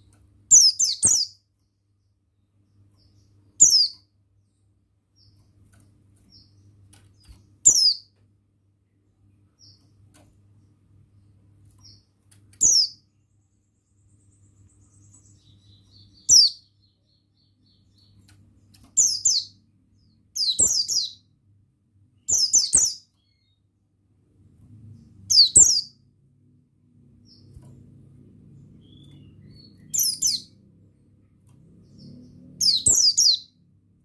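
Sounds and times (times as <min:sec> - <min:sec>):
faint low hum: 0:00.0 - 0:34.0
white-eye chirping: 0:07.2 - 0:08.0, 0:25.3 - 0:26.0, 0:28.8 - 0:30.6, 0:31.8 - 0:33.5.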